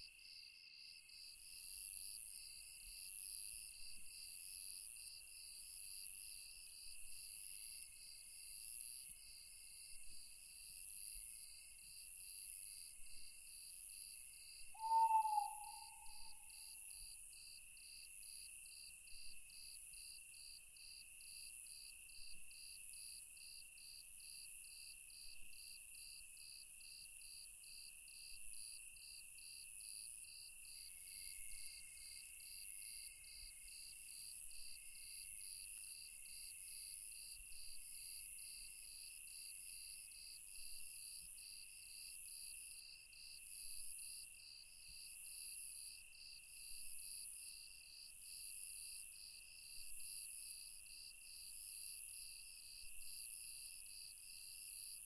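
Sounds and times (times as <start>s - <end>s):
owl hooting: 14.8s - 16.5s
crickets and insects chirping: 14.8s - 16.6s.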